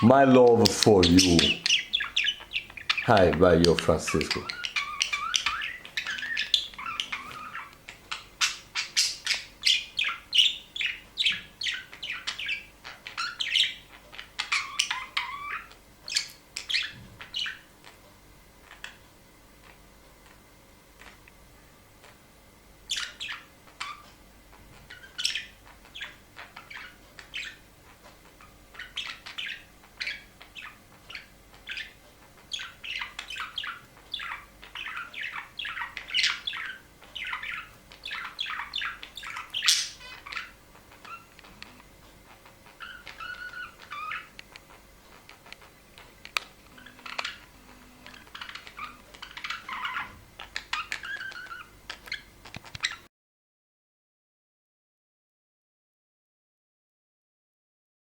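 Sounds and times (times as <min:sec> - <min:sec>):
small birds chirping: 0:00.0 - 0:53.1
bird squawk: 0:04.1 - 0:18.0, 0:22.9 - 0:45.8, 0:46.7 - 0:53.1.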